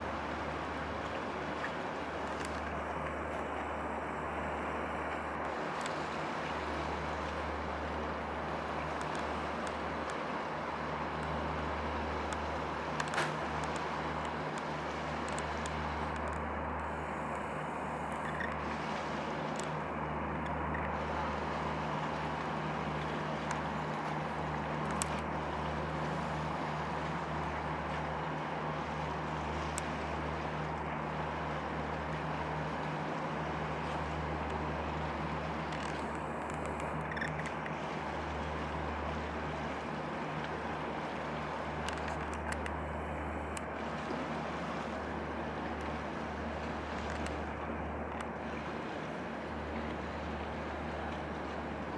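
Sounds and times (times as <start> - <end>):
boat engine drone: 0.0 - 51.9
water noise: 0.0 - 51.9
wind: 0.0 - 51.9.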